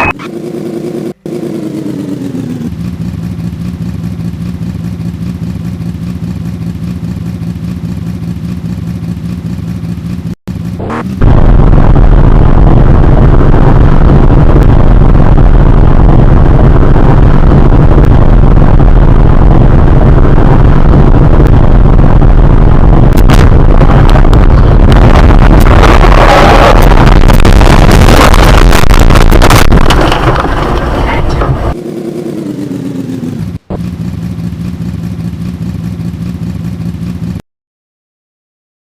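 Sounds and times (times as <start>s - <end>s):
overdriven vehicle engine noise: 0.0s - 37.4s
engine clatter: 0.1s - 37.4s.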